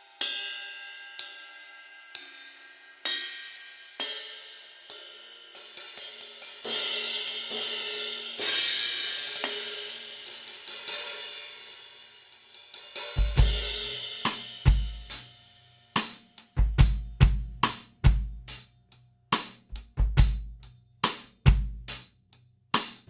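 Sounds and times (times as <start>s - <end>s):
cymbal strikes ringing: 0.0s - 11.6s
drum kit playing: 12.8s - 15.2s, 16.0s - 18.6s, 19.4s - 22.0s, 22.8s - 23.0s.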